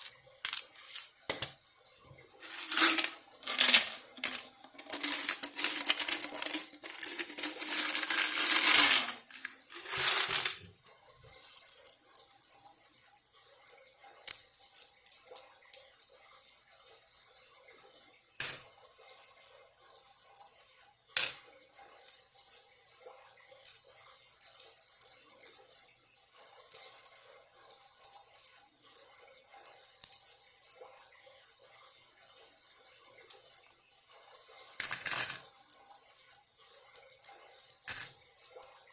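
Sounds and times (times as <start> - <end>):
coins jingling: 0.0 - 1.1, 2.4 - 10.6
coins clicking set down: 0.0 - 1.6, 2.4 - 10.6, 34.8 - 35.5, 36.8 - 38.8.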